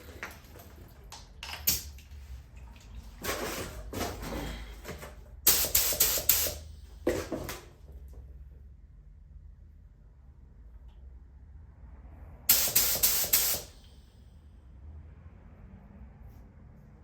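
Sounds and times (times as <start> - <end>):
spray gun hissing in bursts: 5.5 - 6.7, 12.5 - 13.8.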